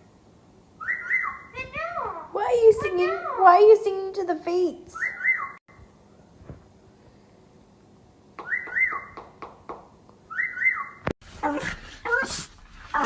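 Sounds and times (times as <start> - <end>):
pet whistling calls: 0.8 - 2.1, 5.0 - 5.6, 8.4 - 9.3, 10.3 - 11.1.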